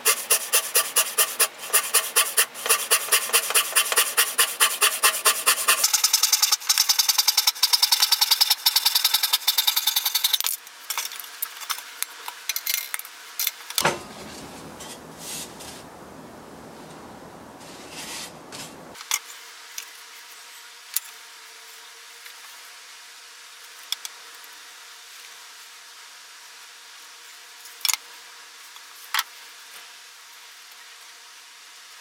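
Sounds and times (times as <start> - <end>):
hand tool scraping wood: 0.0 - 5.9.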